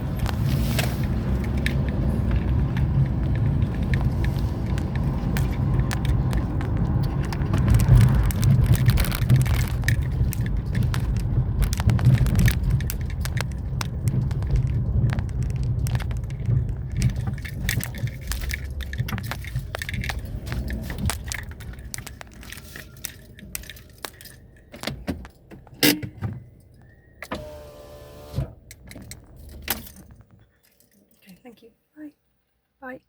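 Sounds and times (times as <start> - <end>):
car rumble from inside: 0.0 - 30.5
small clicks and crunches: 0.0 - 31.4.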